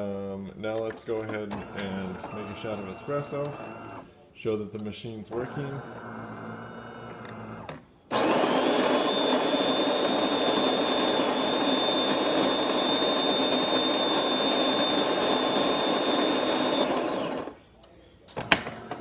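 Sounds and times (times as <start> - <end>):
coffee grinder grinding beans: 5.4 - 17.6.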